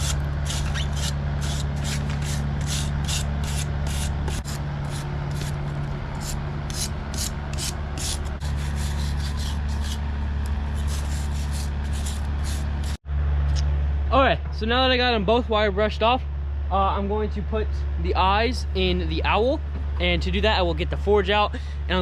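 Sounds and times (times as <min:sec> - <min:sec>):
wire brush scrubbing wood: 0:00.0 - 0:13.0
steady low hum: 0:00.0 - 0:22.0.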